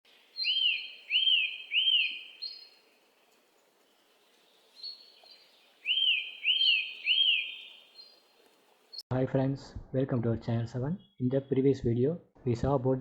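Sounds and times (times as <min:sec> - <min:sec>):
bird chirping: 0:00.1 - 0:09.0.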